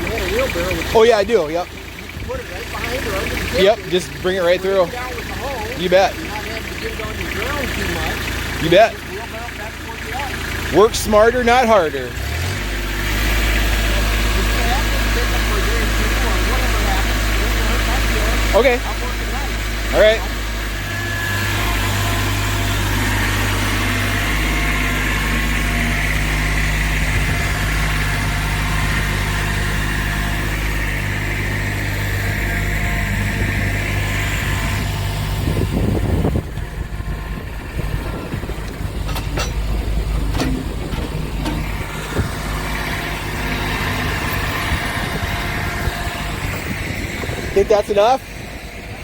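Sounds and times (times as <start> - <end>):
tractor diesel engine running: 0.0 - 49.0
knocks and clatters: 37.4 - 43.7.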